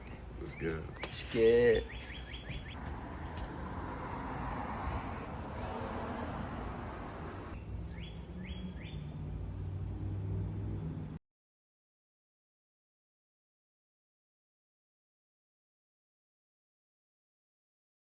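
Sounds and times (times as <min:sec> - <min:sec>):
bird chirping: 0:00.0 - 0:02.8, 0:07.6 - 0:09.3.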